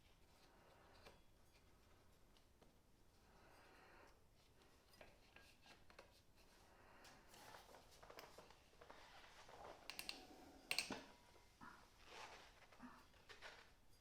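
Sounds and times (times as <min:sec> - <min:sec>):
hand tools clicking and rustling: 0:09.9 - 0:11.0.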